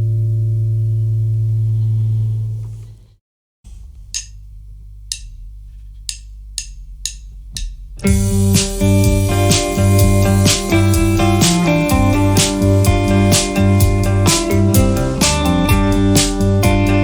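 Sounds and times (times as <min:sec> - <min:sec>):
band sustained drone: 0:03.7 - 0:17.0
drumsticks ticking count-in: 0:03.8 - 0:08.2.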